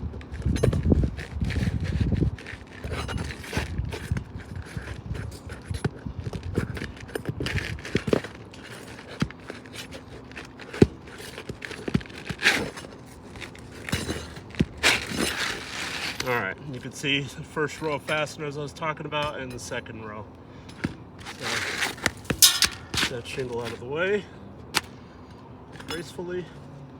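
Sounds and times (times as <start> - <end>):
metal tool scraping shingles: 0.4 - 16.4, 21.2 - 23.8.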